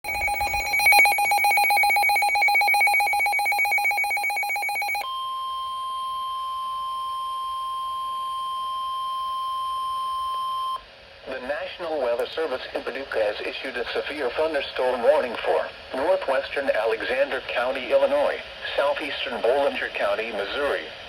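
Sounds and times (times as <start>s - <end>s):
steady warning alert tone: 0.0s - 5.0s
rapidly pulsing electronic alarm: 0.0s - 5.1s.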